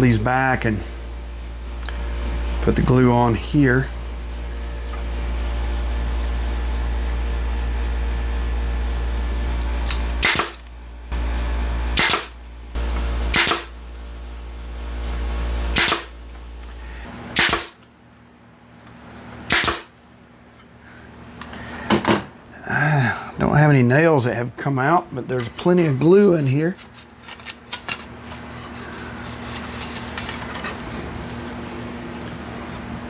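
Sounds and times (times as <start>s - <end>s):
low machine hum: 0.0s - 33.0s
nail gun firing: 10.2s - 10.7s, 12.0s - 12.4s, 13.3s - 13.8s, 15.8s - 16.2s, 17.4s - 17.8s, 19.5s - 19.9s.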